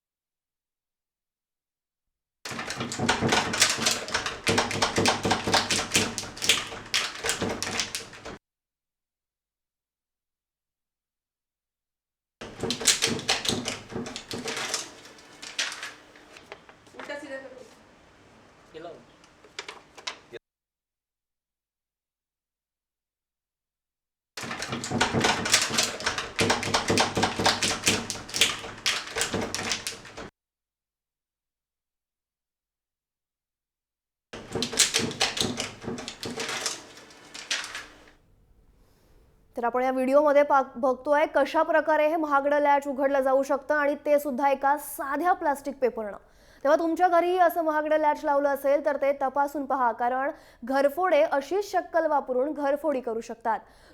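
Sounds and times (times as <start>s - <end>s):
plastic sheet rattling in door latch: 2.5s - 8.4s, 12.5s - 17.2s, 19.4s - 20.3s, 24.4s - 30.3s, 34.4s - 38.2s.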